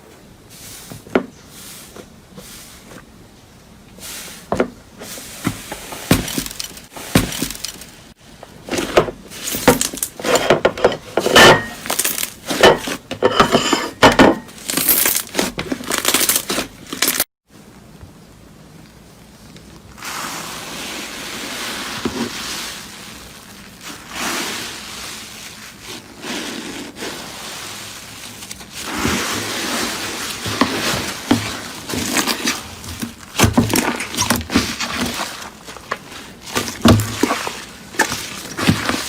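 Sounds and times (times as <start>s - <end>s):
brittle crunching and crackling: 14.5s - 17.3s, 28.1s - 39.0s.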